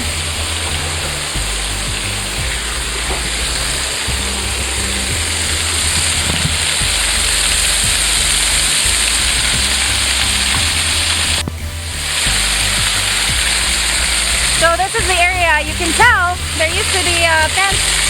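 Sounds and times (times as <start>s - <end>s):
waterfall roaring: 0.0s - 18.0s.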